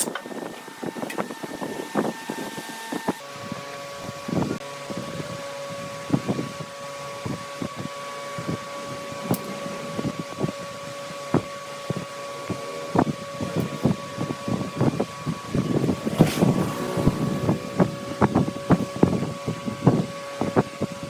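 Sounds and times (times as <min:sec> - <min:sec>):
wood lathe motor whine: 0:00.1 - 0:21.0
turning tool cutting wood: 0:08.6 - 0:20.5.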